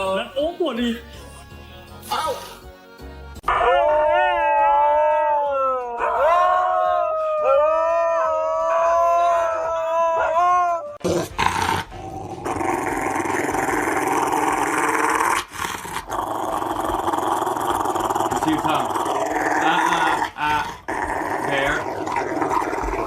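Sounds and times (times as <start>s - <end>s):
dog howling: 3.4s - 11.0s.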